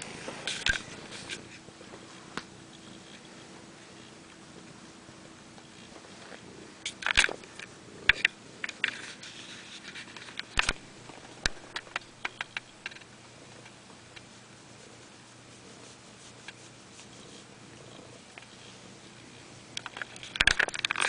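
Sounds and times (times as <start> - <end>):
sharp irregular clicks and knocks: 6.8 - 9.2, 9.9 - 14.3, 19.7 - 21.0.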